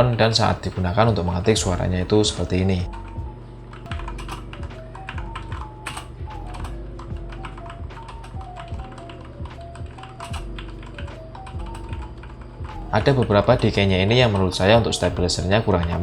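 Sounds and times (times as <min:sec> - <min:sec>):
background music: 0:00.0 - 0:16.0.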